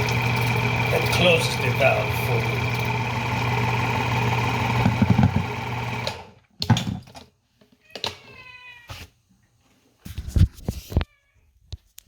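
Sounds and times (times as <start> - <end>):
electrical hum with low buzz: 0.0 - 6.0.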